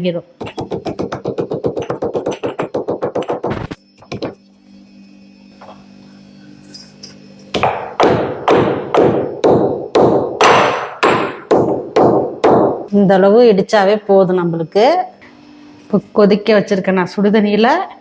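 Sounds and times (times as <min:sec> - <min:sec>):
pestle pounding in a mortar: 0:00.4 - 0:04.4, 0:07.5 - 0:12.9.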